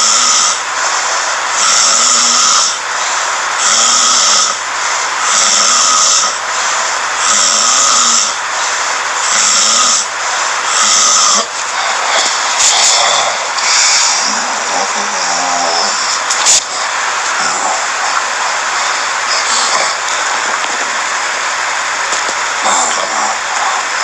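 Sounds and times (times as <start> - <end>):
person snoring: 10.7 - 21.4, 22.6 - 24.0.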